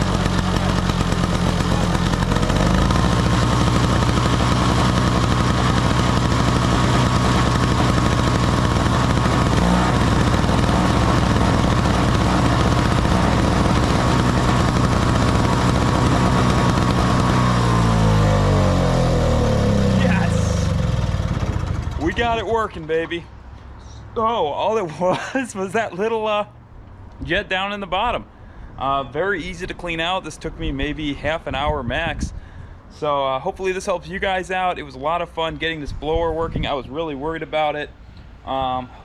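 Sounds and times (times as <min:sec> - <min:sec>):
snowblower engine running: 0:00.0 - 0:22.9.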